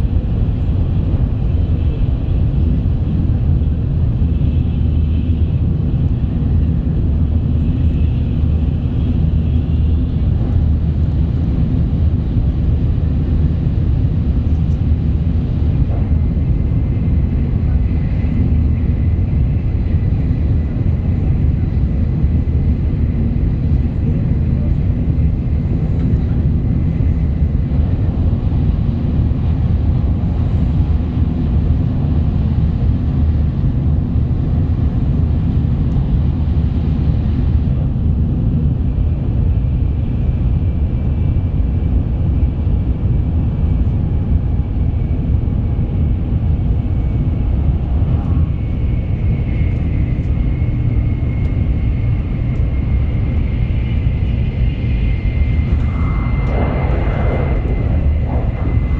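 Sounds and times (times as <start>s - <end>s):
train rumbling at speed: 0.0s - 58.9s
thin high whine: 55.1s - 58.9s.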